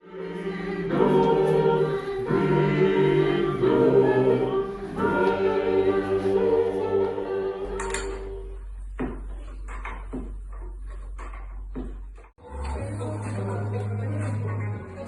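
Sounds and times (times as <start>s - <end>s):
choir singing sustained chords: 0.0s - 8.6s.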